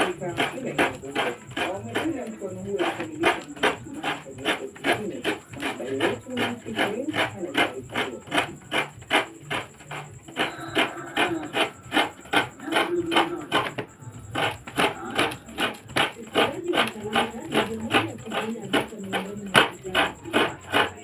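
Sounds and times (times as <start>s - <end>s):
coconut rasping on hand grater: 0.0s - 21.0s.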